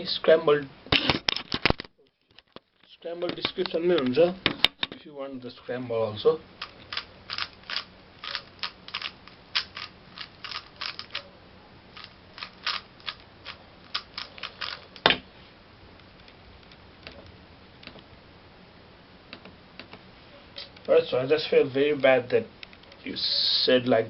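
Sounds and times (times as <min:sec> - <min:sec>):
puzzle cube plastic clicks: 0:06.6 - 0:11.2, 0:12.0 - 0:15.1.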